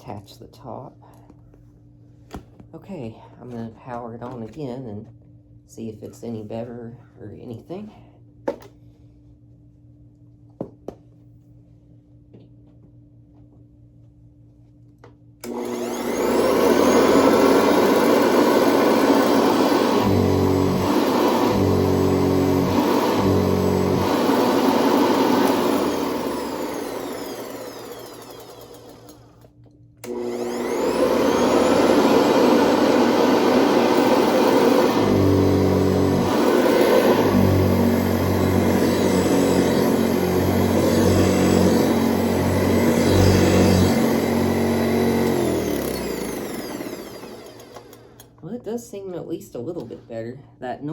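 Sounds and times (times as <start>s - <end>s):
vacuum cleaner running: 15.4s - 48.3s.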